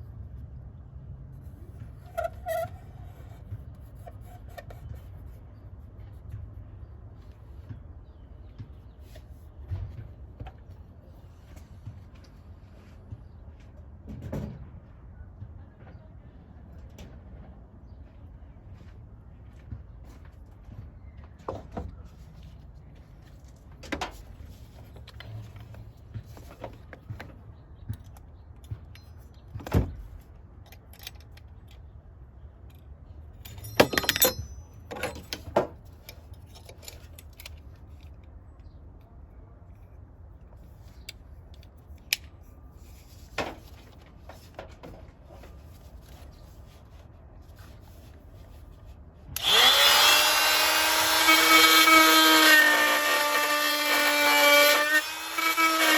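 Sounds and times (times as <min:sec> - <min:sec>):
tools clicking and knocking: 0:30.6 - 0:31.9, 0:32.6 - 0:38.4
power tool whining while cutting: 0:49.4 - 0:55.9.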